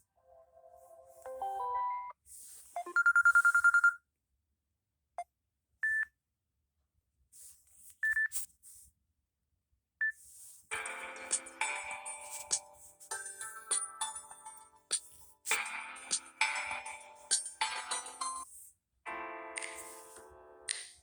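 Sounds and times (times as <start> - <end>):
electronic ringtone melody: 0.5 - 2.2.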